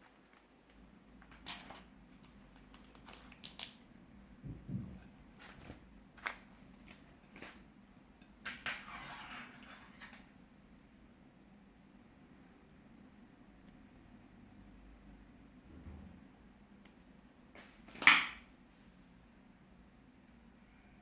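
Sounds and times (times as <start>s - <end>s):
plastic bags crinkling: 0.0s - 3.8s, 5.2s - 7.6s.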